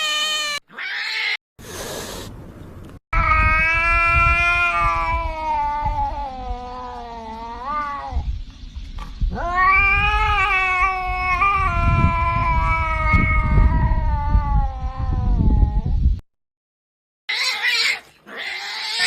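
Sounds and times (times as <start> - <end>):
cat yowling: 0.0 - 1.4, 3.2 - 8.2, 9.3 - 15.8, 17.3 - 19.0.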